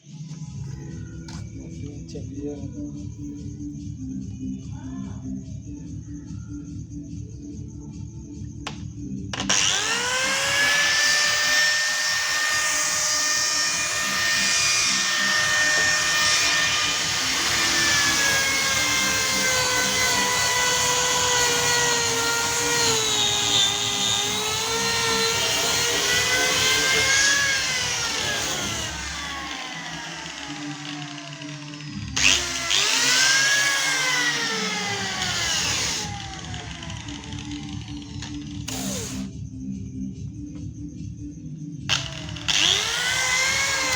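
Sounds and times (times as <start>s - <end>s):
background music with low beat: 0.0s - 43.9s
power tool motor whine: 9.4s - 39.3s, 41.9s - 43.9s.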